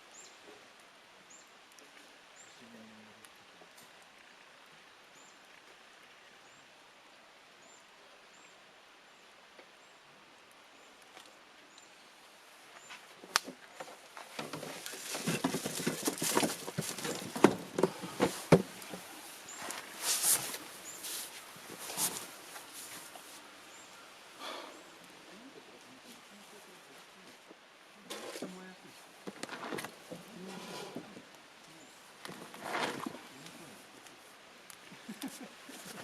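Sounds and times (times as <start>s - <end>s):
firewood cracking and snapping: 13.2s - 21.0s.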